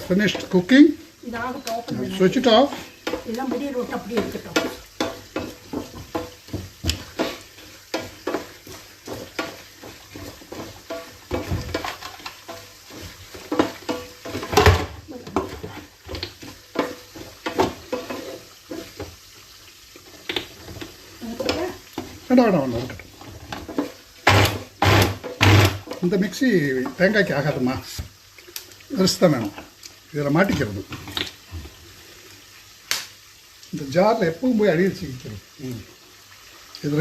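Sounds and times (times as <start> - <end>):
utensils clinking on metal pan: 0.0 - 19.1.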